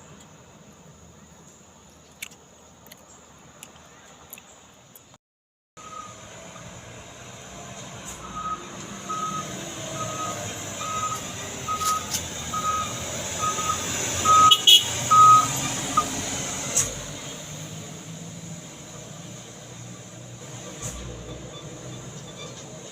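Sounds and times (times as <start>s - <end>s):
truck reversing alarm beeping: 5.8s - 16.3s
truck engine running: 5.8s - 22.9s.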